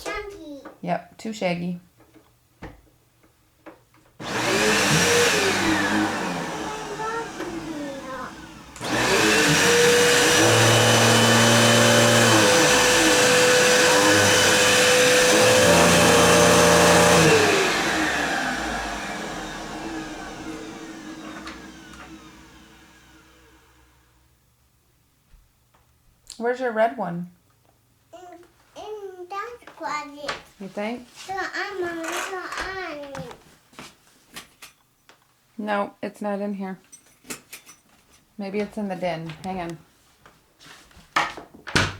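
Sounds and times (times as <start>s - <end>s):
vacuum cleaner motor whining: 4.2s - 24.2s.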